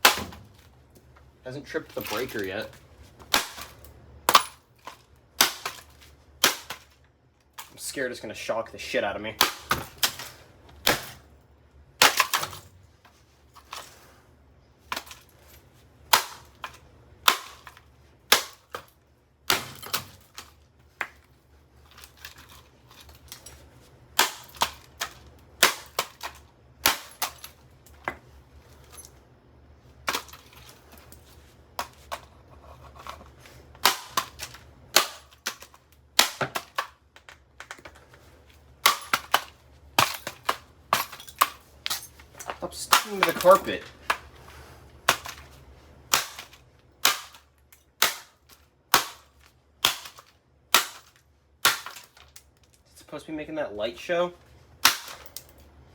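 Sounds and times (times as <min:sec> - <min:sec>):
plastic housing being smashed: 0:00.0 - 0:00.7, 0:38.8 - 0:44.2
low steady hum: 0:00.0 - 0:55.9.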